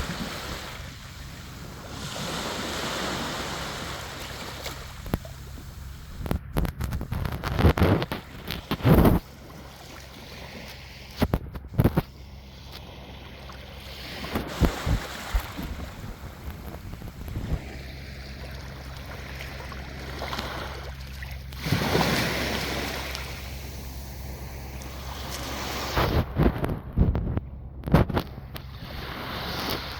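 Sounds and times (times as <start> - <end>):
wind buffeting microphone: 0.0 - 9.6, 14.0 - 20.0, 21.5 - 29.9
sea waves washing in: 0.0 - 29.9.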